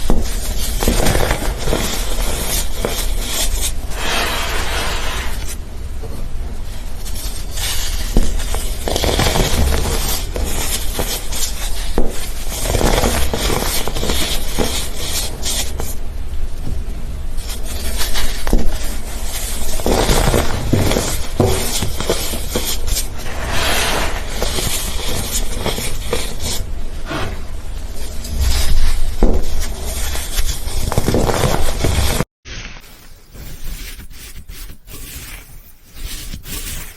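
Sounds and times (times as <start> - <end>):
slime squishing by hand: 32.8 - 36.9.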